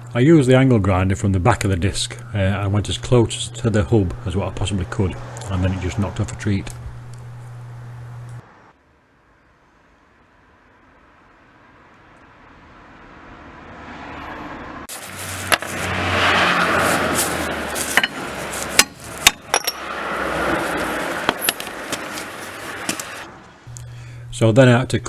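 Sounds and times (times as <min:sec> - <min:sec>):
angle grinder cutting steel: 0:15.1 - 0:23.3.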